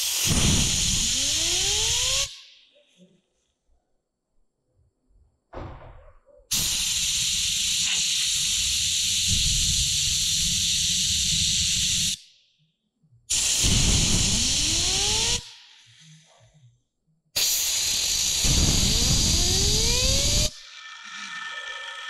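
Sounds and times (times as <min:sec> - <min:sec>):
hissing air blasts: 0:00.0 - 0:02.3, 0:06.5 - 0:12.2, 0:13.3 - 0:16.2, 0:17.4 - 0:20.7
whine rising in pitch: 0:19.2 - 0:22.0.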